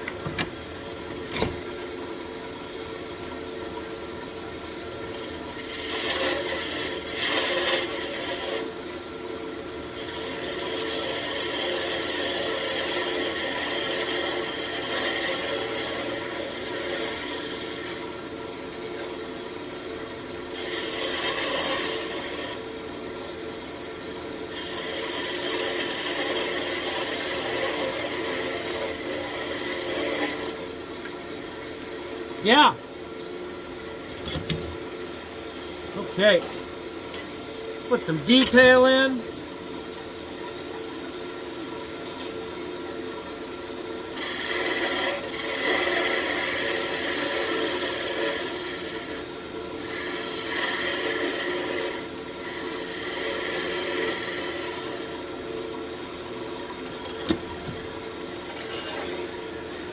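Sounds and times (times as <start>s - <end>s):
wood lathe humming: 4.2s - 8.7s, 9.8s - 18.3s, 20.4s - 22.7s, 24.4s - 31.1s, 44.0s - 55.9s
tool scraping spinning wood: 5.0s - 8.7s, 10.0s - 18.1s, 20.5s - 22.6s, 24.5s - 30.7s, 37.9s - 39.2s, 44.1s - 55.3s.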